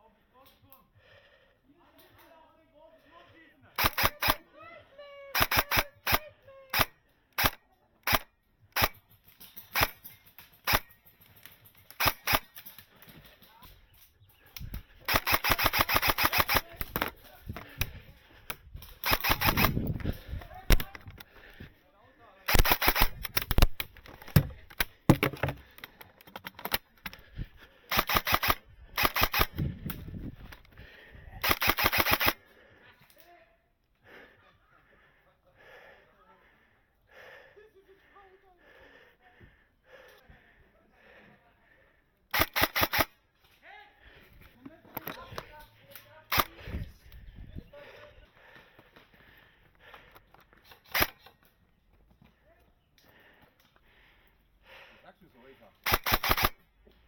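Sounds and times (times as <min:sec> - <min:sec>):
airsoft guns firing: 0:03.8 - 0:04.4, 0:05.4 - 0:11.0, 0:11.9 - 0:12.8, 0:15.0 - 0:17.8, 0:19.0 - 0:19.8, 0:22.5 - 0:25.6, 0:27.9 - 0:29.6, 0:31.4 - 0:32.4, 0:42.3 - 0:43.1, 0:55.8 - 0:56.6
airsoft gun firing single shots: 0:15.0 - 0:17.1, 0:22.5 - 0:23.8.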